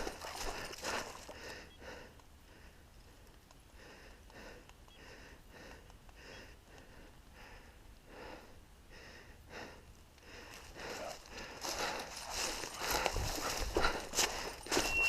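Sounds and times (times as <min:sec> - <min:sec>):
footsteps through dry leaves: 0:10.5 - 0:15.0.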